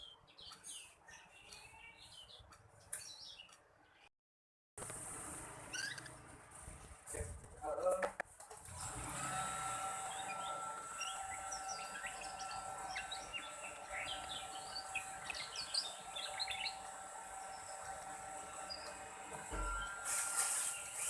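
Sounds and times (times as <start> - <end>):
canary twittering: 5.7 - 6.1, 10.1 - 17.8.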